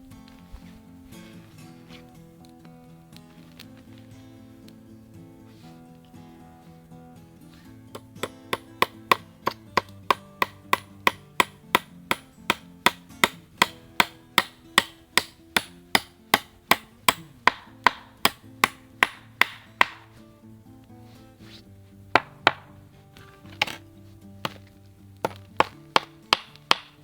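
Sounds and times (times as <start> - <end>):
hammer nailing into wood: 8.0 - 20.2, 22.2 - 22.8, 24.4 - 27.0.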